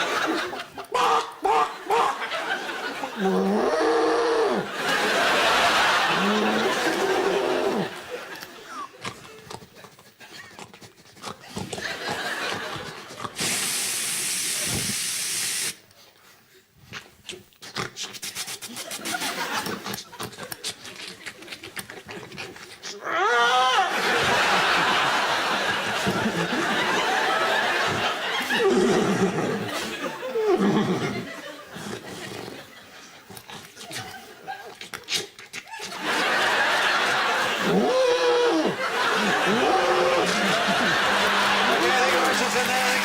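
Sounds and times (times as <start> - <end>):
audience laughter: 0.0 - 3.6, 4.6 - 9.0, 11.7 - 13.4, 18.7 - 20.7, 23.9 - 34.9, 35.7 - 43.0
vocal hiss: 13.2 - 15.9
squealing animal-like call: 37.6 - 40.5.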